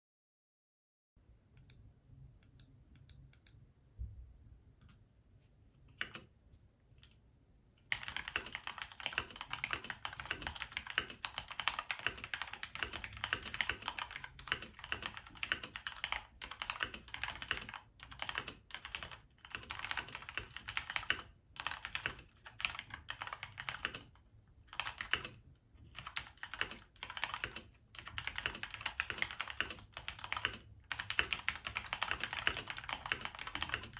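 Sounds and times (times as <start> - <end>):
typing on mechanical keyboard: 5.9 - 6.3, 7.9 - 33.9.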